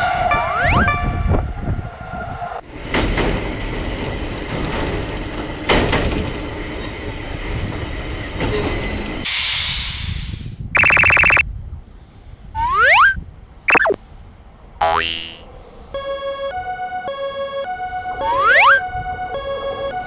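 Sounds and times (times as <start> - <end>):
train rumbling on rails: 1.4 - 10.2
train clanks: 2.7 - 9.5
loud hiss burst: 9.3 - 10.6.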